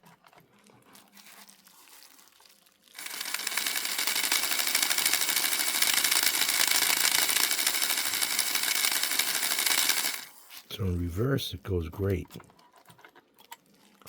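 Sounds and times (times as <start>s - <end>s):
model locomotive motor whirring: 3.0s - 10.3s.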